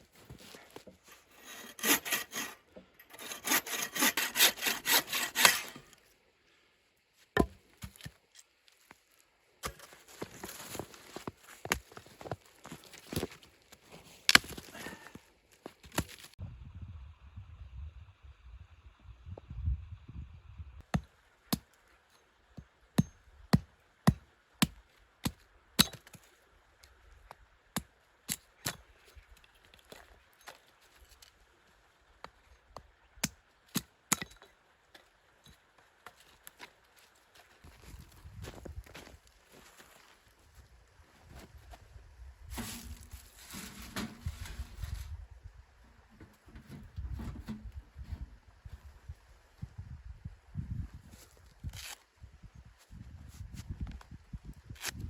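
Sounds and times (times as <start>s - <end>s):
hand saw cutting wood: 1.0s - 6.0s
axe chopping wood: 7.4s - 8.1s, 23.0s - 26.2s.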